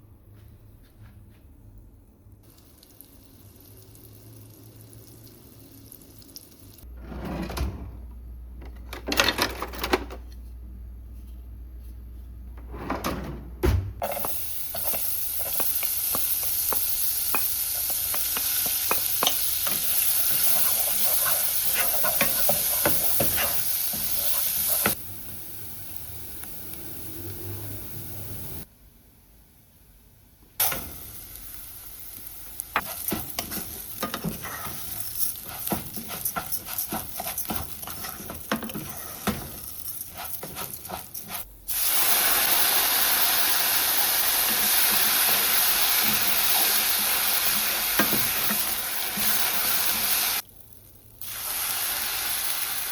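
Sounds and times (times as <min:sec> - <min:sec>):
food sizzling in a pan: 0:02.4 - 0:06.9, 0:14.0 - 0:28.7, 0:30.6 - 0:52.9
utensil stirring and scraping: 0:14.0 - 0:25.0, 0:32.7 - 0:41.5.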